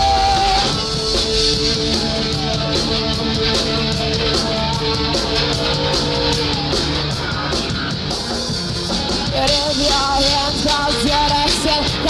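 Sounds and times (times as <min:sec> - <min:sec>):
electric guitar notes: 0:00.0 - 0:07.8
drums: 0:00.0 - 0:12.0.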